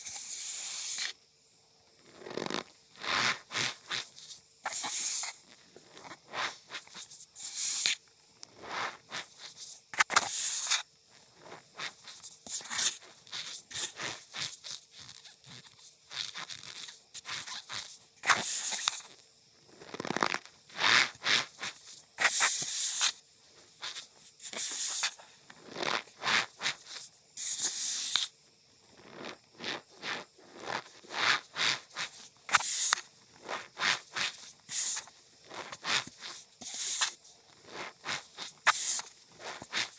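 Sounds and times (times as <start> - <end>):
cornstarch squeaky crunches: 2.1 - 5.4, 11.8 - 19.1, 19.8 - 23.2, 29.0 - 39.9.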